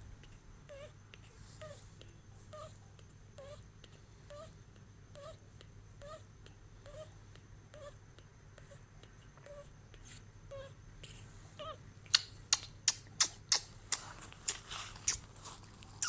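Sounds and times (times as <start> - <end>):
baby chick soft wavering calls: 3.4 - 3.6, 4.3 - 5.4, 6.0 - 7.1, 11.6 - 11.8.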